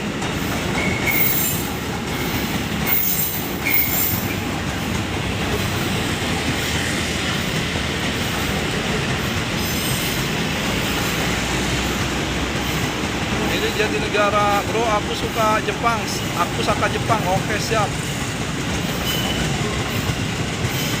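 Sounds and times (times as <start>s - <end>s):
electric train passing: 0.0s - 21.0s
wheels clattering on rails: 0.0s - 21.0s
high wheel squeals: 0.7s - 4.5s, 9.6s - 11.4s, 18.8s - 21.0s.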